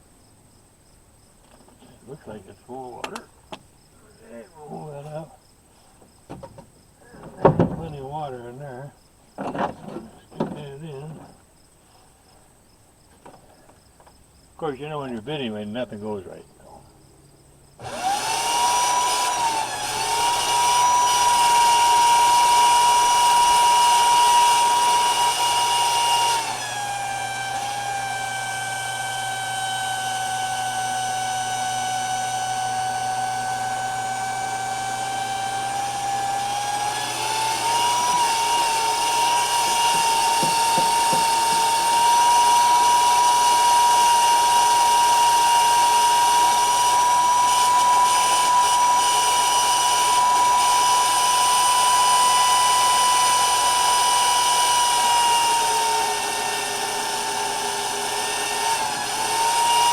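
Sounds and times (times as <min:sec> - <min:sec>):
electric water pump whining: 0:17.8 - 0:59.9.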